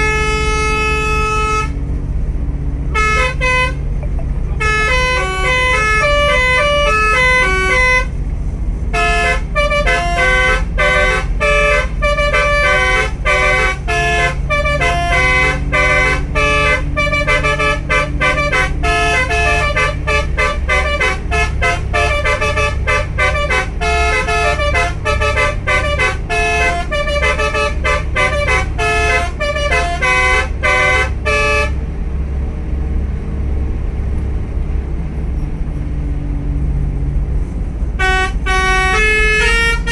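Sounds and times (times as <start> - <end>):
bus horn playing a melody: 0.0 - 1.9, 2.8 - 32.0, 37.8 - 39.9
bus engine rumble: 0.0 - 39.9.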